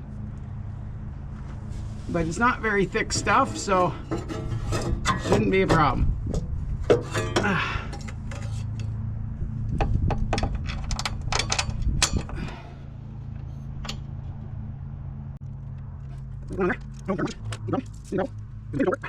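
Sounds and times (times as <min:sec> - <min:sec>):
steady low hum: 0:00.0 - 0:10.6
hand tools clicking and clanking: 0:02.7 - 0:09.0, 0:10.3 - 0:12.7.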